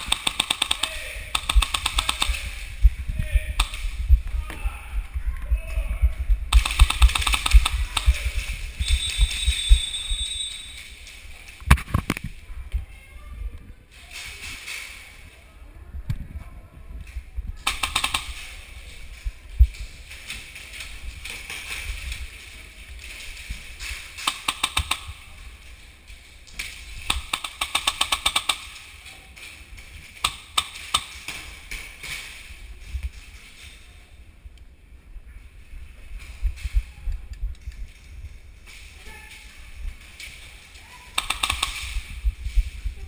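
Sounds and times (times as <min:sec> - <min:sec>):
airsoft guns firing bursts: 0:00.0 - 0:02.7, 0:06.5 - 0:09.5, 0:17.6 - 0:18.7, 0:23.8 - 0:25.5, 0:26.6 - 0:29.0, 0:30.2 - 0:31.7, 0:41.1 - 0:42.2.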